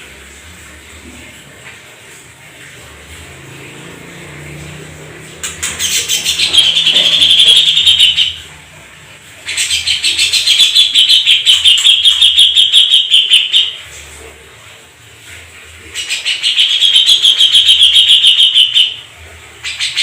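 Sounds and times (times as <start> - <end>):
canary singing rolling trills: 5.4 - 8.5, 9.4 - 13.8, 15.9 - 20.0.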